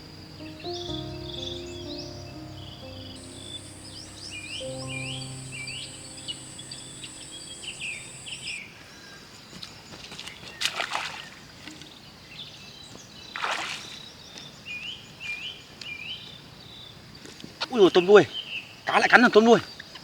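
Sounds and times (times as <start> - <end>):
birds chirping: 0.0 - 8.6
insect buzzing: 0.0 - 8.6
water splashes: 10.6 - 11.8, 13.4 - 14.0.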